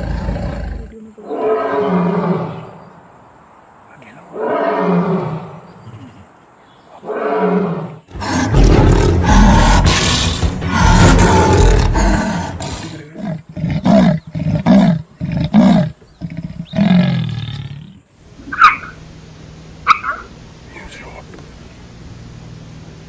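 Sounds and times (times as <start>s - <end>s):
tiger roaring: 0.0s - 2.8s, 4.3s - 6.3s, 7.0s - 18.0s.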